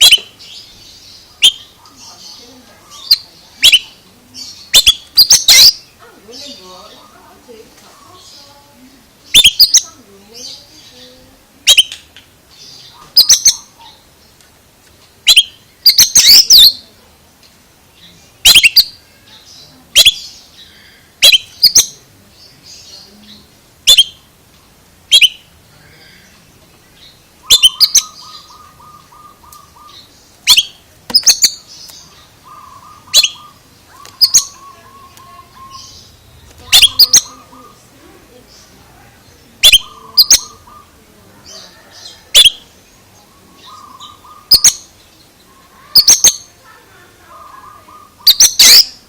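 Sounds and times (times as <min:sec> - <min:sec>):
bird buzzy trills: 0:27.1 - 0:37.9
bird whistled chirps: 0:48.2 - 0:49.0.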